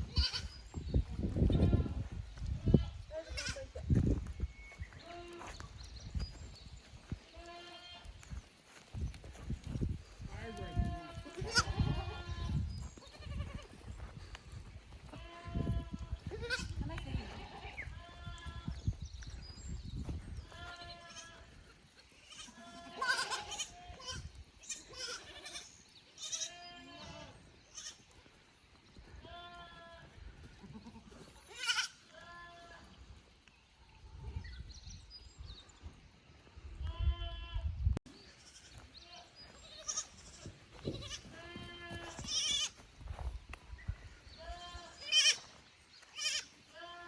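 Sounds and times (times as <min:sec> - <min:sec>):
goat kids bleating: 0:00.0 - 0:03.9, 0:04.9 - 0:05.6, 0:07.2 - 0:08.2, 0:10.2 - 0:18.9, 0:20.4 - 0:28.3, 0:29.0 - 0:33.0, 0:36.8 - 0:42.8, 0:44.3 - 0:47.0.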